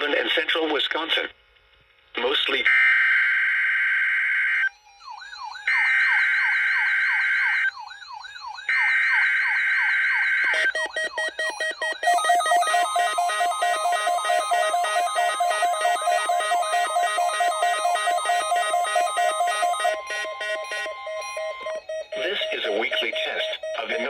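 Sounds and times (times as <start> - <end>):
warbling siren-like tone: 10.5 - 22.1
harsh pulsing alert alarm: 10.5 - 24.0
screeching data tones: 10.5 - 24.0.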